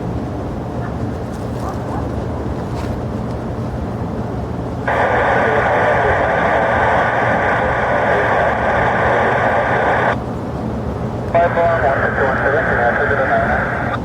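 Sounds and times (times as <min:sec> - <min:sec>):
jet aircraft rumble: 0:00.0 - 0:14.0
radio static: 0:04.9 - 0:10.2, 0:11.3 - 0:14.0.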